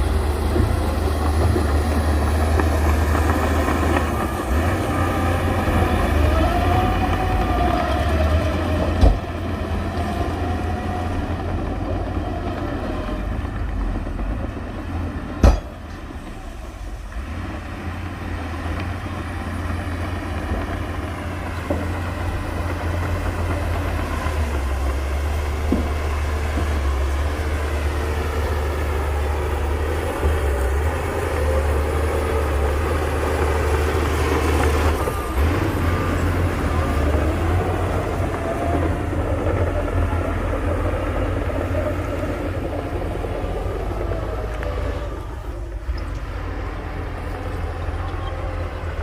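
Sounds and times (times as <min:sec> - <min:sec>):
heavy diesel engine running: 0:00.0 - 0:49.0
sharp knock: 0:15.4 - 0:15.8
metallic bang: 0:15.4 - 0:16.8.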